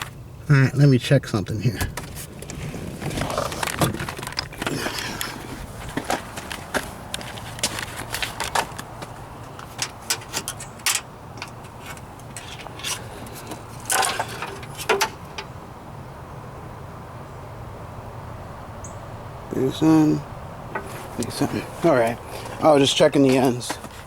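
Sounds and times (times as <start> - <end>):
metallic clicks and rattles: 9.6 - 15.5.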